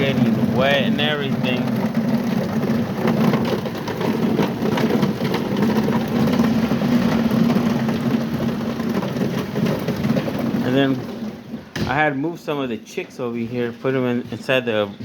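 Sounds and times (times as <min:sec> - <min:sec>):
heavy rain splashing: 0:00.0 - 0:11.5.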